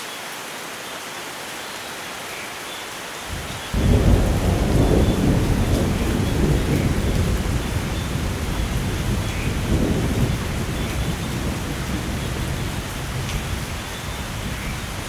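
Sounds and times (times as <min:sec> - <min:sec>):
heavy rain: 0:00.0 - 0:15.0
thunder rumbling: 0:03.3 - 0:15.0.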